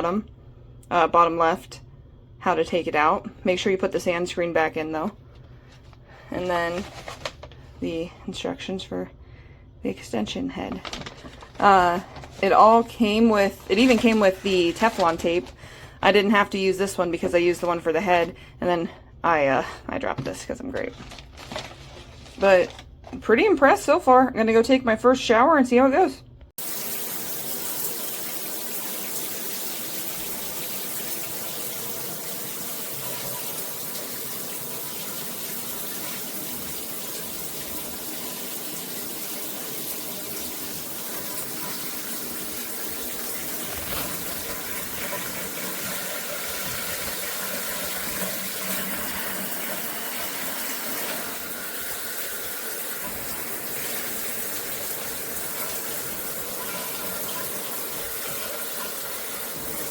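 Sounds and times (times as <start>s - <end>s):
shower water spraying: 26.6s - 59.9s.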